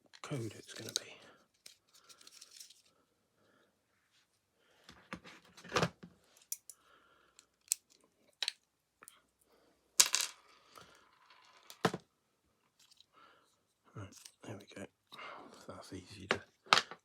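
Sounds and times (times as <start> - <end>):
plastic parts clicking and clattering: 0.0 - 2.9, 5.0 - 6.8, 7.4 - 8.7, 10.0 - 12.0, 12.7 - 13.1, 14.1 - 14.4.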